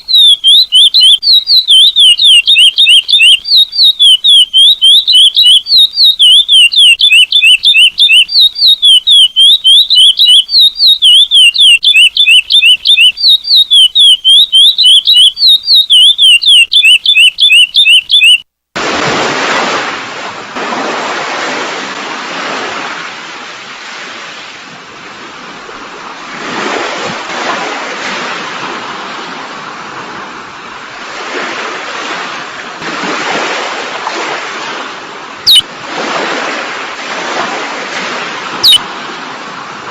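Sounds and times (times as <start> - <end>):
bird song of repeated whistled notes: 0.0 - 18.4, 35.4 - 35.6
ocean waves: 0.0 - 39.9.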